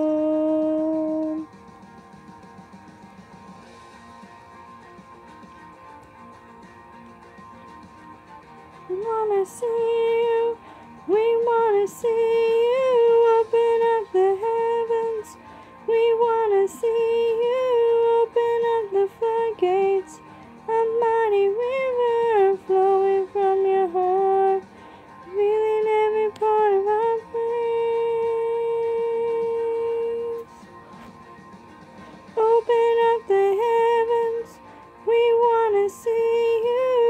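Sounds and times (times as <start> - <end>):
woman singing wordless runs: 25.3 - 30.4, 32.4 - 34.5, 35.1 - 37.0.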